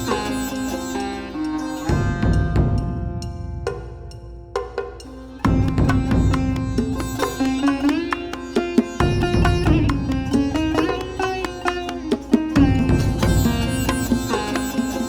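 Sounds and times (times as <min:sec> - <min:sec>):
plucked-string melody with drone: 0:00.0 - 0:15.0
bass and drum beat: 0:04.6 - 0:07.4, 0:09.0 - 0:11.3, 0:12.4 - 0:14.6.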